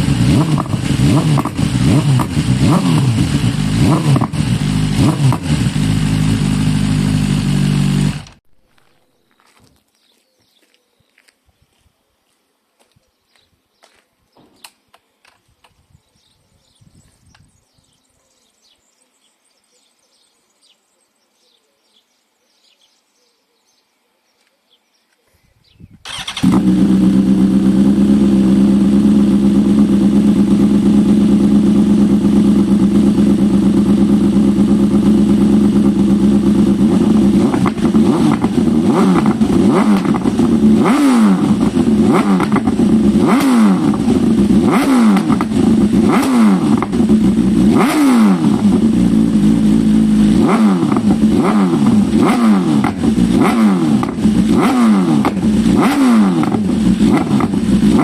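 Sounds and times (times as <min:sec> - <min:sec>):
motorcycle engine revving: 0:00.0 - 0:08.4, 0:26.0 - 0:58.0.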